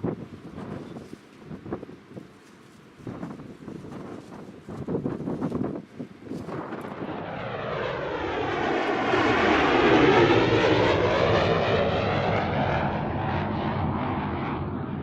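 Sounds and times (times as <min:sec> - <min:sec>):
turboprop aircraft flying past: 0:06.1 - 0:15.0.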